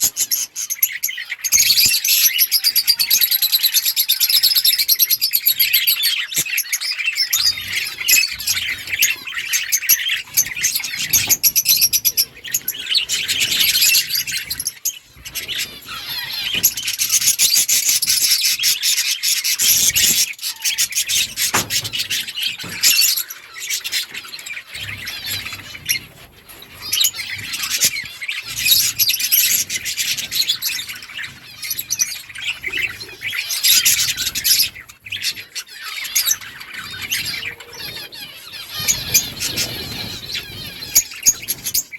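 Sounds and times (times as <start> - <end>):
budgerigars chattering and chirping: 0.0 - 41.9.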